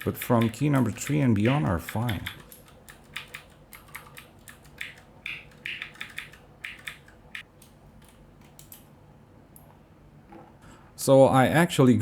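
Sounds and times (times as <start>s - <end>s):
mechanical keyboard clicks: 0.0s - 8.8s.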